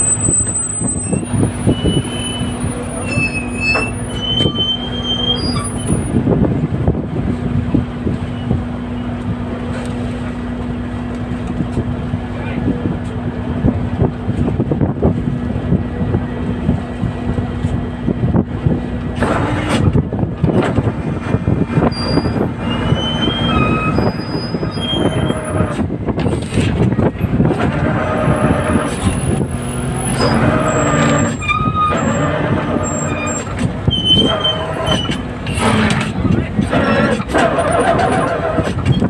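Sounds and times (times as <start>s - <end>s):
high squeaks: 0.0s - 6.2s, 21.8s - 25.8s, 27.6s - 39.0s
engine and machinery droning: 0.0s - 39.0s.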